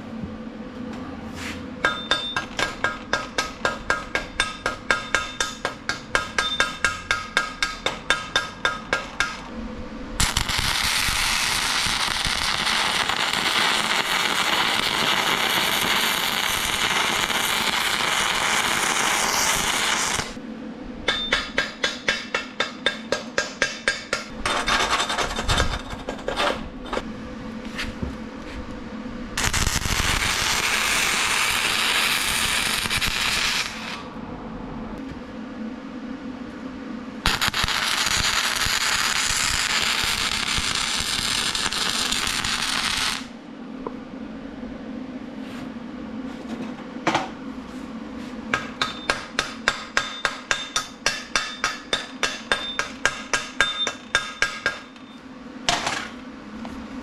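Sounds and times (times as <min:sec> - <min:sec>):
faint steady hum: 0:00.0 - 0:57.0
welding arc crackling and sizzling: 0:10.2 - 0:20.4, 0:29.4 - 0:34.1, 0:37.2 - 0:43.3.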